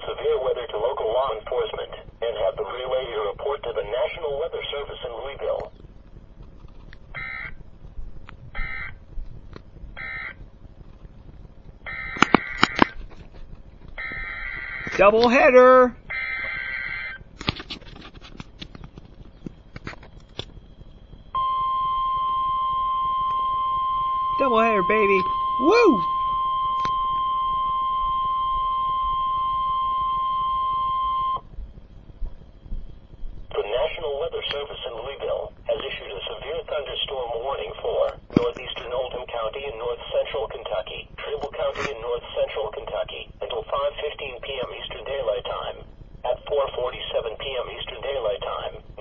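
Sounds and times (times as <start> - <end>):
faint static hiss: 0.0 - 49.0
sharp pops: 9.2 - 15.4
harsh digital data bursts: 21.4 - 31.4.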